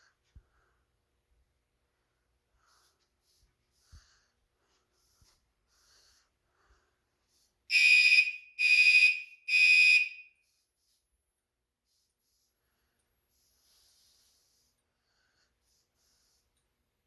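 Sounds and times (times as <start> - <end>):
fire alarm high-pitched beeps: 7.7 - 10.4, 15.8 - 17.0.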